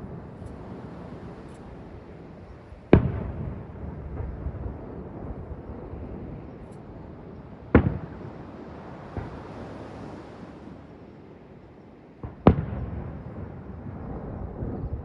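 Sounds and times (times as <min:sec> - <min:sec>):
fireworks bursting: 0:07.6 - 0:10.2, 0:12.2 - 0:15.0.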